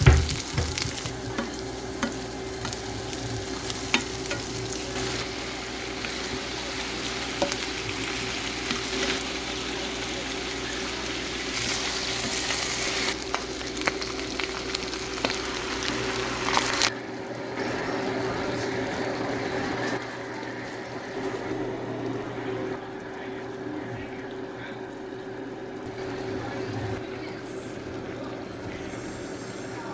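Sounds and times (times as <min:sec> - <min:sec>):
food sizzling in oil: 0:00.0 - 0:21.2.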